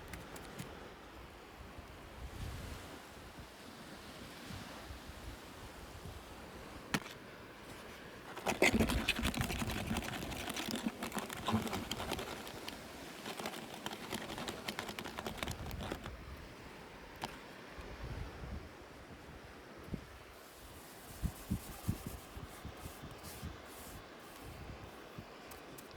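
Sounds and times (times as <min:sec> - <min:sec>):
plastic packaging crinkling: 0:07.8 - 0:16.1.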